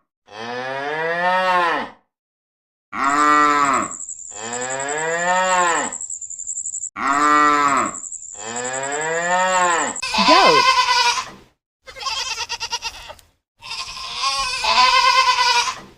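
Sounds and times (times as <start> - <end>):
cow mooing: 0.3 - 2.0, 3.0 - 5.9, 7.0 - 11.1.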